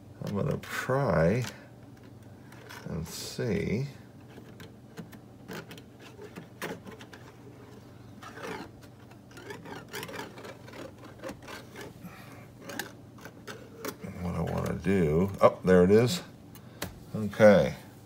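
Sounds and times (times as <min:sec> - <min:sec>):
metal tie strap clicking and scraping: 0:04.3 - 0:14.9.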